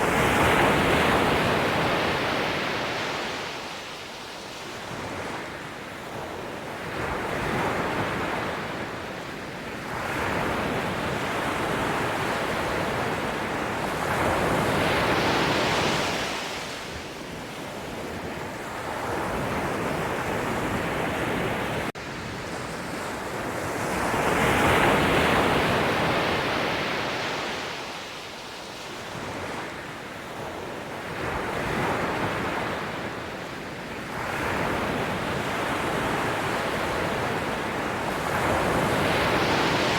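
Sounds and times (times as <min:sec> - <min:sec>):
sea waves breaking: 0:34.2 - 0:39.9.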